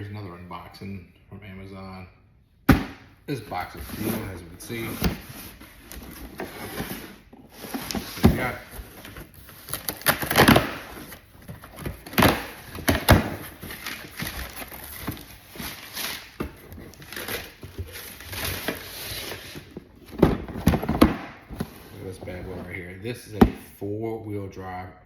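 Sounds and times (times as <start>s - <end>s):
cardboard box knocking and rustling: 19.6s - 22.7s.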